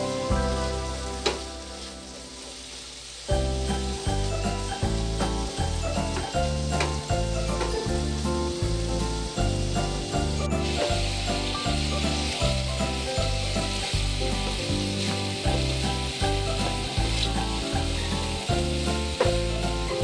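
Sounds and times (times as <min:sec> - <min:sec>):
background music with bass line: 0:00.0 - 0:02.4, 0:03.3 - 0:20.0
food sizzling in a pan: 0:00.0 - 0:20.0.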